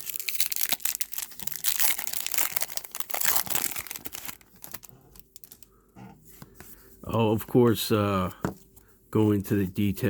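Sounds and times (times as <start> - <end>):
wrapper crinkling and tearing: 0.0 - 5.7.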